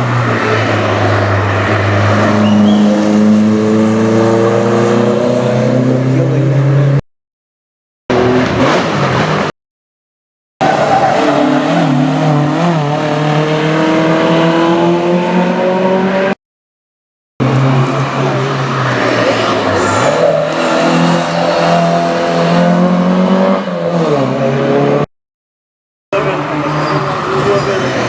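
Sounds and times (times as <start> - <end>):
rally car engine accelerating: 0.0 - 7.0, 8.1 - 9.5, 10.6 - 16.4, 17.4 - 25.1.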